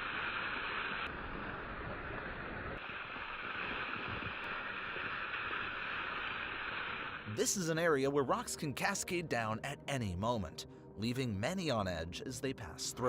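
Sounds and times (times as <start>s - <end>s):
steady rushing noise: 0.0s - 7.4s.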